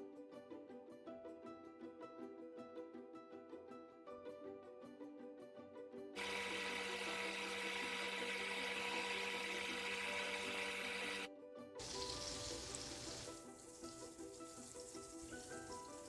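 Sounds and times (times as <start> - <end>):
background music: 0.0 - 16.0
okra sizzling in hot oil: 6.2 - 16.0.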